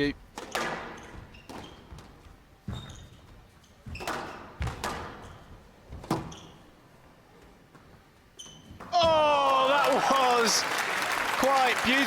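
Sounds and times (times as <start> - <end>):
shoes squeaking on wooden floor: 0.9 - 6.8, 7.7 - 9.1.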